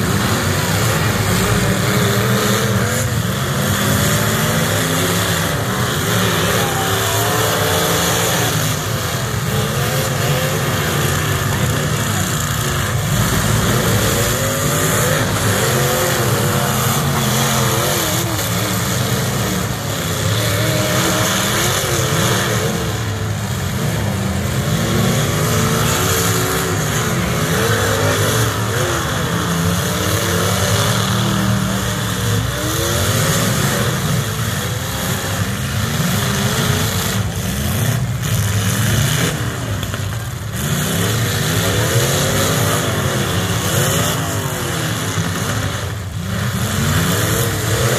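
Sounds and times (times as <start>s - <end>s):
car engines revving: 0.0s - 47.9s
constant roar: 0.0s - 47.9s.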